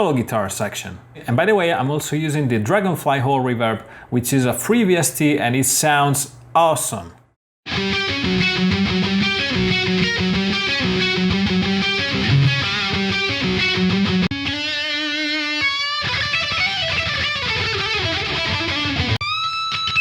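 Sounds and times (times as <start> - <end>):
distorted electric guitar solo: 7.7 - 20.0
metal backing track: 7.7 - 20.0.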